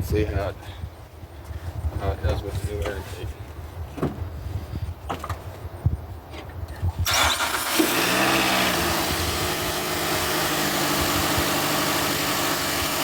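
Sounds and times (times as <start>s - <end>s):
car engine starting and idling: 7.0s - 13.0s.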